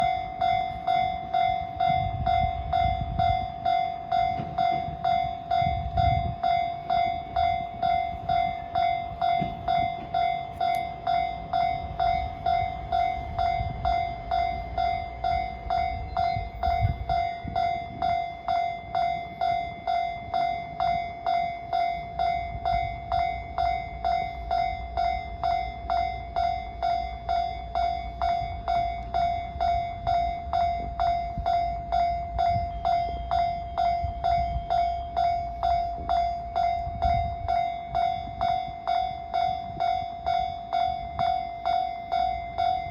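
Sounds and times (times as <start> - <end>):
level crossing warning bell: 0.0 - 42.9.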